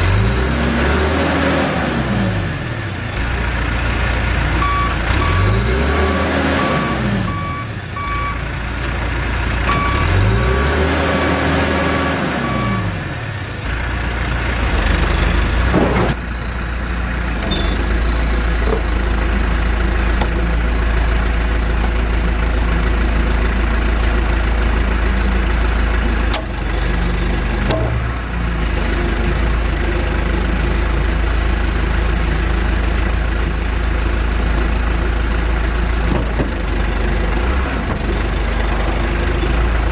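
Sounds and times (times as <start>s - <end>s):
diesel engine revving: 0.0s - 39.9s
reversing alarm beeping: 4.6s - 5.6s, 6.6s - 8.5s, 9.7s - 10.2s, 12.4s - 13.0s.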